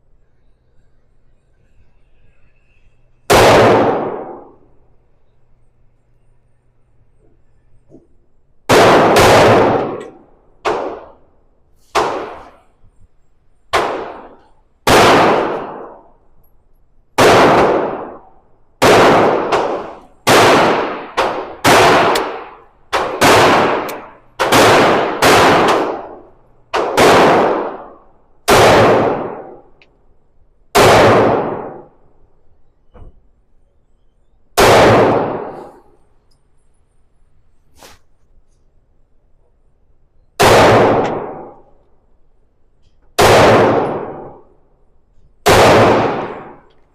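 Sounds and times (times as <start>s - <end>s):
pistol shots echoing: 3.3s - 4.8s, 8.7s - 11.3s, 11.9s - 12.7s, 13.7s - 16.1s, 17.2s - 29.8s, 30.7s - 32.0s, 34.6s - 35.9s, 40.4s - 41.8s, 43.2s - 44.6s, 45.4s - 46.7s.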